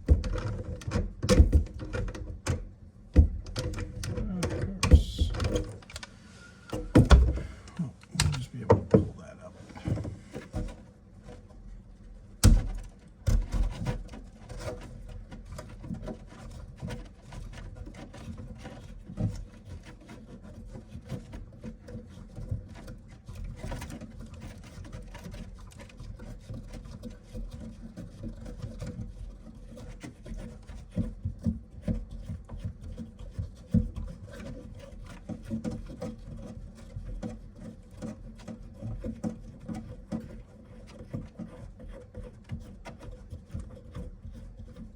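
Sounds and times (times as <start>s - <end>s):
tools knocking and clunking: 0.0s - 2.6s, 3.2s - 6.0s, 6.7s - 10.8s.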